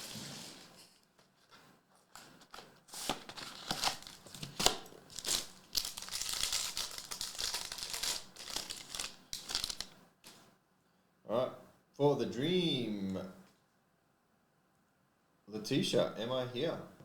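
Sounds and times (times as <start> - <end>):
plastic wrapper crinkling: 2.0 - 10.0.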